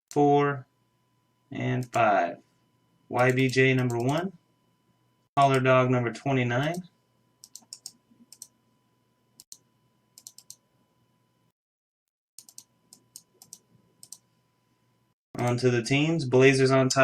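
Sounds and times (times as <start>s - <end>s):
faint computer clicks: 9.4s - 10.6s, 12.4s - 14.2s.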